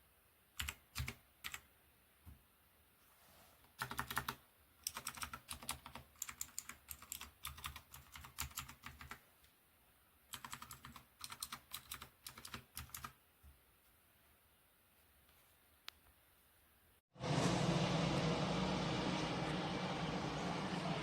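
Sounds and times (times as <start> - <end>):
mechanical keyboard typing: 0.6 - 1.7, 3.8 - 9.2, 10.3 - 13.2.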